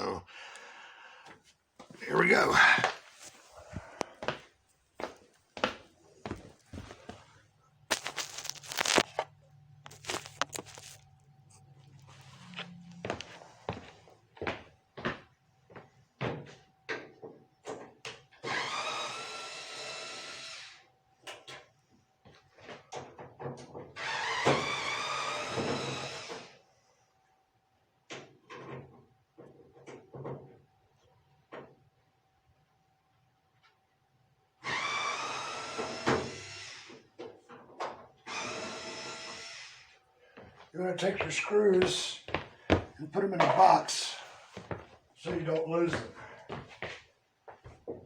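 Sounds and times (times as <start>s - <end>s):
power drill whirring: 18.4s - 20.8s, 24.0s - 26.6s, 34.6s - 37.0s, 38.2s - 40.0s.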